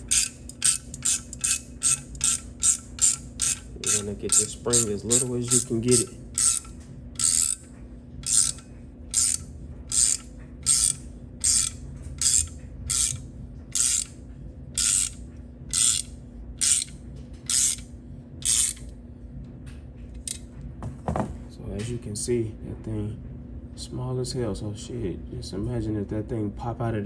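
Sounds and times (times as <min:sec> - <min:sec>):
ratchet wrench clicking: 0:00.0 - 0:14.1, 0:14.8 - 0:16.9, 0:17.5 - 0:18.9.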